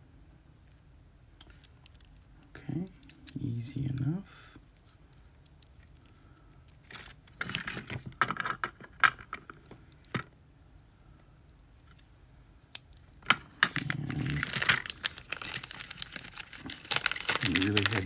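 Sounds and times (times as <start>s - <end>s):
metal lock parts clicking: 1.3s - 2.2s, 12.7s - 18.0s.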